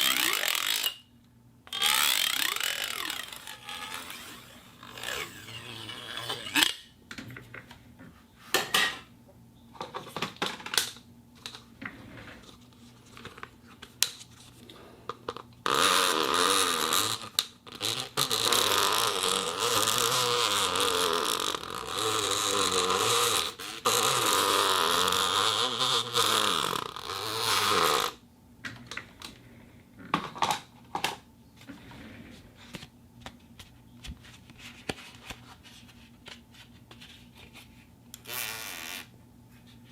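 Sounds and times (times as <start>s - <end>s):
plastic cup rubbing with squeaks: 0.0s - 0.9s, 1.7s - 6.8s, 15.6s - 28.2s, 38.2s - 39.1s.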